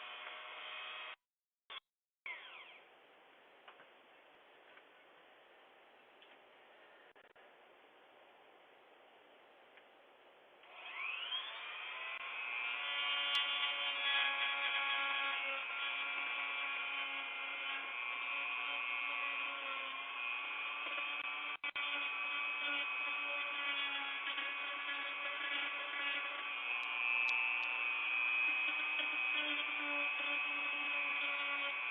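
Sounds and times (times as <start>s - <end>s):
electric power tool whining: 10.6s - 31.9s.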